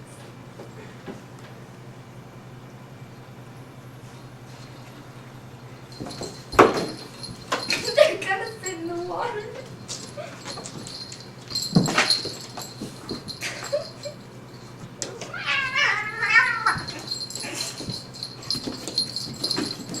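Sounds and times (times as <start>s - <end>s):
cat meowing: 15.3s - 16.9s.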